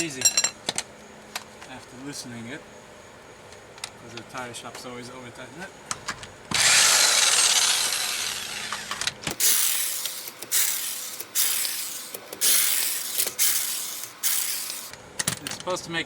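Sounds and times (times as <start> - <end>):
lug nuts rasping off studs: 8.6 - 14.9.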